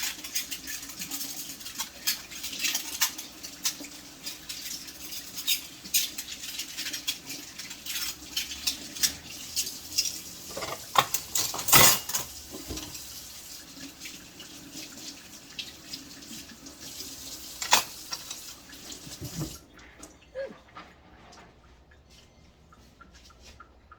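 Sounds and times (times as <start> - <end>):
dishes clinking: 0.0 - 13.0, 17.6 - 19.6
kitchen tap running: 0.0 - 20.5.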